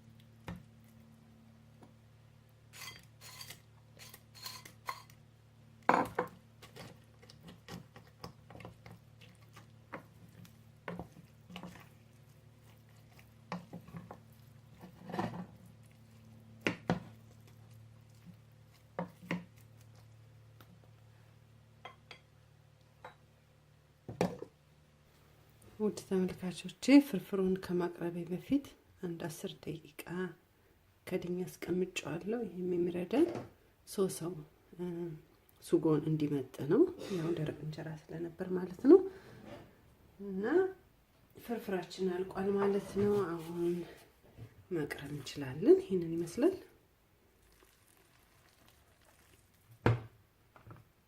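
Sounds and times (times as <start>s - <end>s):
metal spoon scraping a pot: 2.7s - 5.1s.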